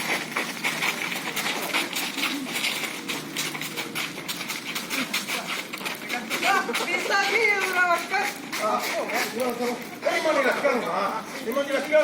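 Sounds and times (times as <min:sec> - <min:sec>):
running footsteps and scuffing: 0:00.0 - 0:12.0
steady background noise: 0:00.0 - 0:12.0.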